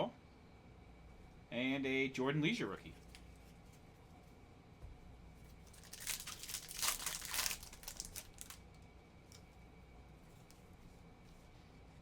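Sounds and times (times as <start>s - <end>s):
foil wrapper crinkling and tearing: 5.6s - 8.8s.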